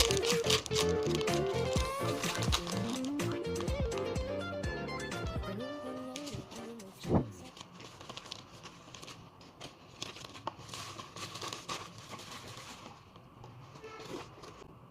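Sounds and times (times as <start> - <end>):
plastic packaging crinkling: 0.0 - 4.2, 7.4 - 14.8.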